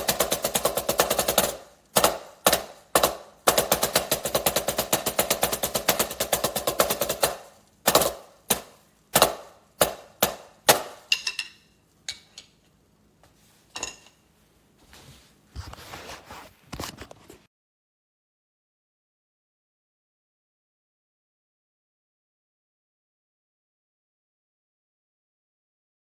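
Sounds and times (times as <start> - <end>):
drumsticks striking practice pad: 0.0 - 12.4.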